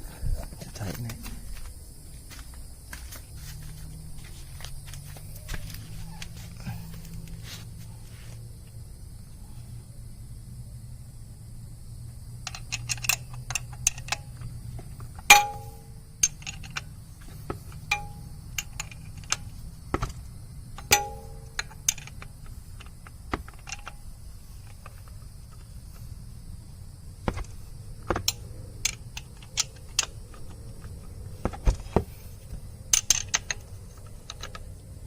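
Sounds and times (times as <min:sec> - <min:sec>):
wrench clinking on metal: 0:12.4 - 0:17.0, 0:17.7 - 0:19.6, 0:20.8 - 0:24.0, 0:28.1 - 0:30.9, 0:32.9 - 0:34.7.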